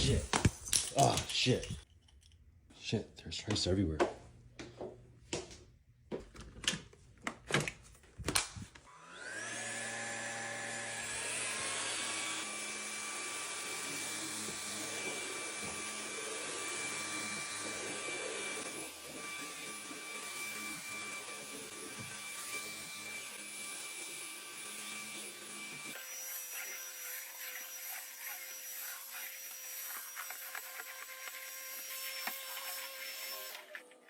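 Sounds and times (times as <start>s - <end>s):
vacuum motor whining: 8.9s - 22.6s.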